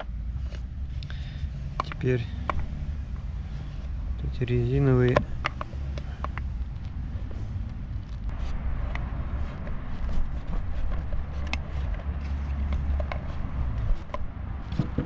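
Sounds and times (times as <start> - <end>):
steady low rumble: 0.0 - 15.0
plastic parts clicking and tapping: 1.7 - 2.7, 5.0 - 6.9.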